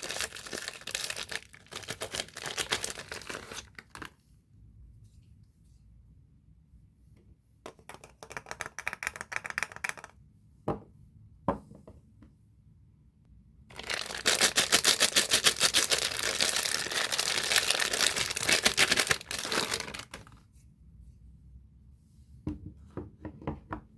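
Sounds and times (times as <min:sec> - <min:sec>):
wrapper crinkling: 0:00.0 - 0:04.1, 0:13.7 - 0:20.4.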